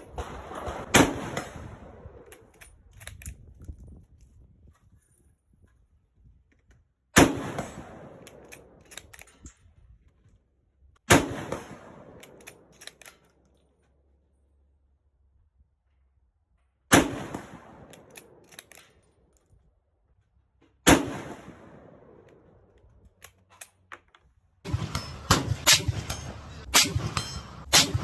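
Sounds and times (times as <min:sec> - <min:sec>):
rifle shots: 0:00.0 - 0:02.3, 0:07.2 - 0:08.8, 0:11.1 - 0:12.7, 0:16.9 - 0:18.4, 0:20.9 - 0:22.2, 0:24.7 - 0:28.0
run of sharp hits: 0:24.7 - 0:28.0.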